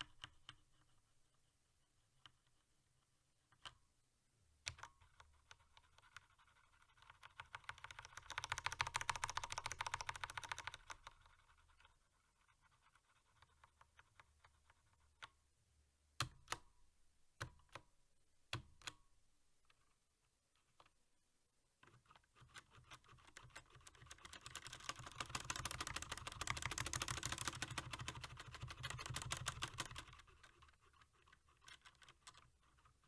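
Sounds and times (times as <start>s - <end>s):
typing on mechanical keyboard: 4.7s - 11.8s, 21.8s - 33.0s.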